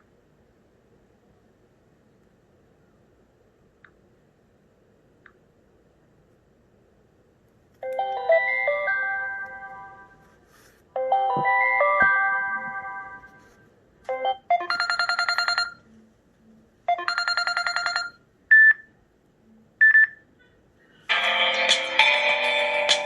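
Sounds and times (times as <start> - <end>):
chiming ringtone melody: 7.8 - 10.2, 11.0 - 13.4, 14.1 - 15.8, 16.9 - 18.2.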